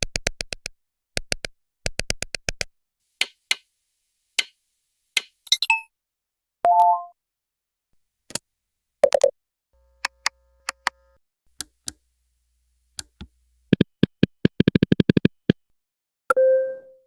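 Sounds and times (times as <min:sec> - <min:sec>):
digital button clicks: 0:06.7 - 0:07.1.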